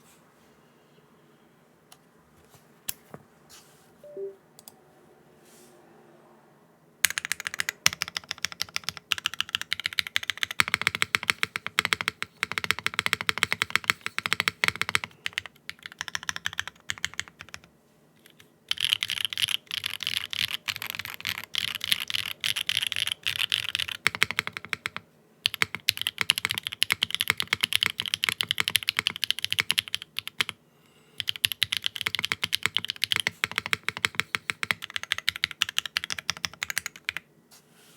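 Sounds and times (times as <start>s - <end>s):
mechanical keyboard typing: 7.0s - 30.6s, 31.2s - 37.2s.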